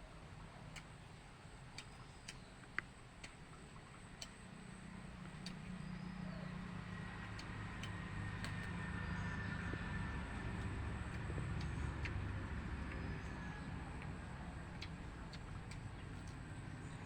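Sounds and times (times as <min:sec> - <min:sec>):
low engine-like rumble: 0:00.0 - 0:17.0
faint clicks: 0:01.7 - 0:04.5, 0:07.3 - 0:17.0.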